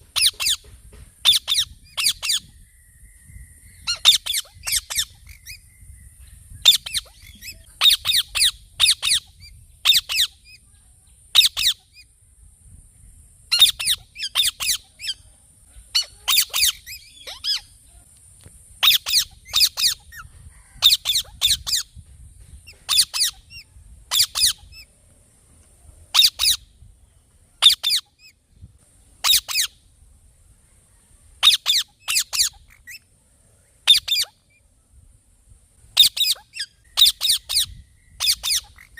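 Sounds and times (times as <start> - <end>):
parrot squawking: 15.9 - 17.6, 27.6 - 28.1, 31.4 - 33.0, 33.9 - 34.4, 36.0 - 38.9.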